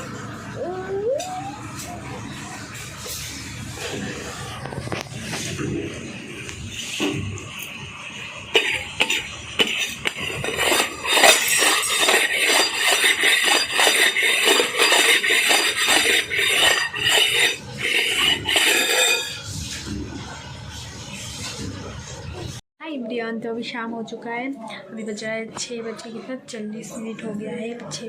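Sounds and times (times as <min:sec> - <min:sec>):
dishes and utensils clattering: 0:08.5 - 0:20.4.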